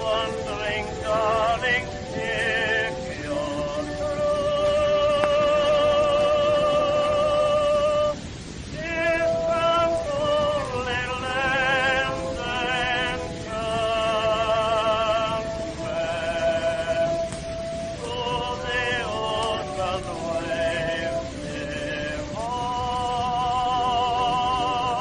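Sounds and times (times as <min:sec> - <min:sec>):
old phonograph melody: 0:00.0 - 0:25.0
recording hiss: 0:00.0 - 0:25.0.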